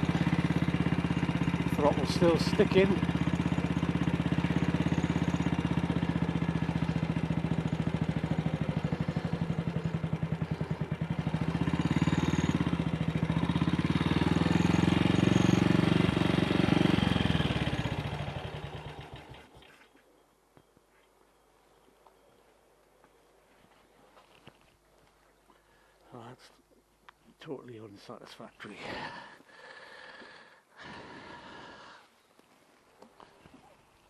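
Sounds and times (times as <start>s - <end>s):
motorcycle engine ticking over: 0.0s - 19.7s.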